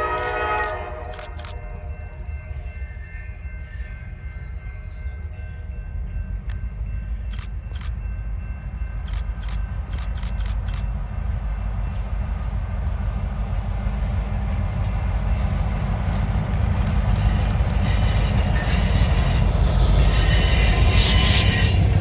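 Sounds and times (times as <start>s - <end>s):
train horn: 0.0s - 2.4s, 18.5s - 22.0s
diesel locomotives rumbling: 0.0s - 22.0s
sharp clicks: 0.2s - 1.6s, 9.0s - 10.9s.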